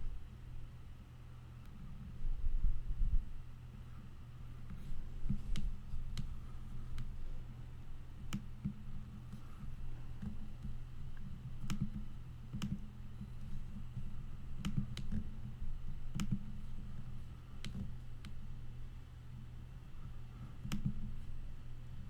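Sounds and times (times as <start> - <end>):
low steady hum: 0.0 - 22.0
computer mouse clicking: 4.7 - 7.2, 8.0 - 18.5, 20.4 - 21.3.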